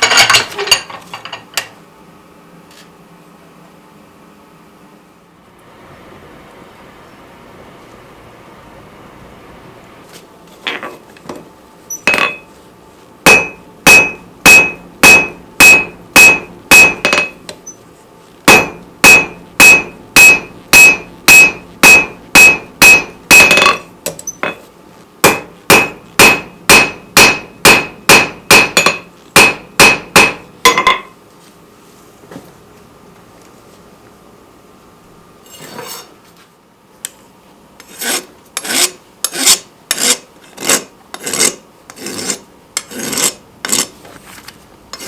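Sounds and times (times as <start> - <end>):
hammer on anvil: 12.0 - 12.5, 13.2 - 17.4, 18.5 - 24.6, 25.2 - 31.1.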